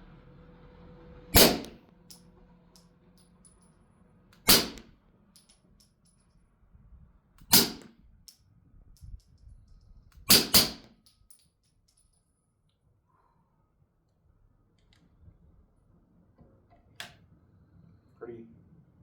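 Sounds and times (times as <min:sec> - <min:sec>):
suppressed pistol shots: 0:01.4 - 0:01.8, 0:04.4 - 0:04.9, 0:07.4 - 0:07.9, 0:10.3 - 0:10.9.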